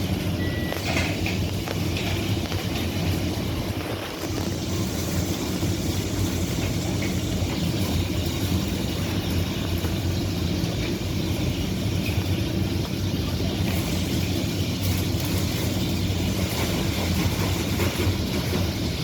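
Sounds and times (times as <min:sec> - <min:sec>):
low mechanical rumble and hum: 0:00.0 - 0:19.0.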